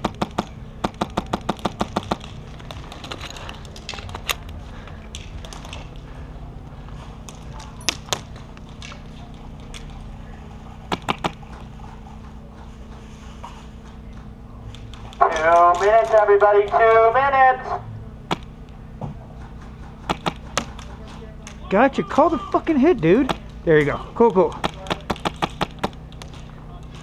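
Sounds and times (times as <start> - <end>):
airsoft rifles firing: 0.0 - 3.2, 10.9 - 11.6, 18.3 - 18.5, 20.0 - 21.0, 23.2 - 23.6, 24.5 - 26.4.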